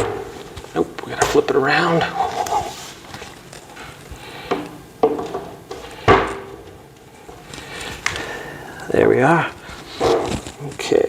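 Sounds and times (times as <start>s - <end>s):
furniture parts knocking and clattering: 0.0s - 0.8s, 4.5s - 7.4s.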